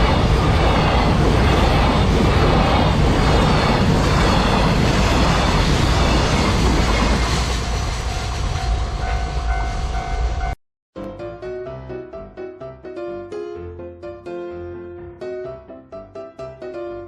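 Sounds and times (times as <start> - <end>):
freight train wagons rumbling: 0.0 - 10.6.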